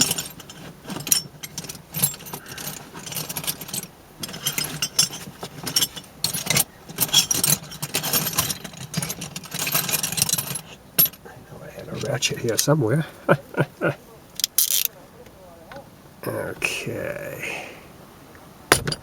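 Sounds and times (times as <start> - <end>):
metal tools clinking and rattling: 0.0 - 14.9.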